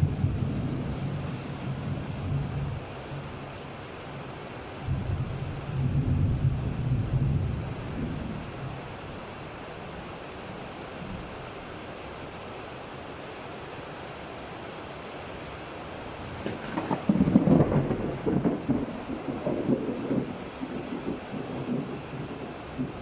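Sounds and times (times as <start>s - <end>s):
steady rain hiss: 0.0s - 23.0s
rolling thunderclap: 16.4s - 23.0s.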